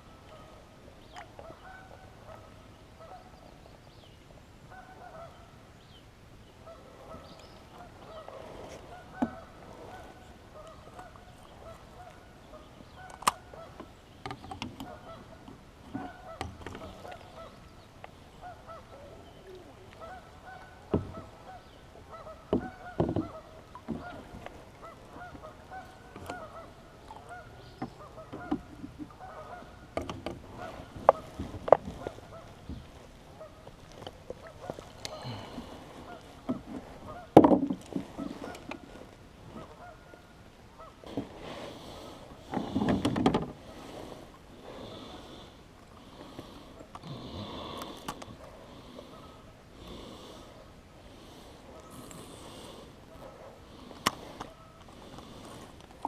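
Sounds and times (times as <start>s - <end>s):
geese honking: 1.4s - 3.3s, 4.7s - 5.5s, 6.6s - 13.8s, 14.8s - 17.7s, 18.3s - 33.7s, 34.4s - 41.2s, 48.8s - 50.6s.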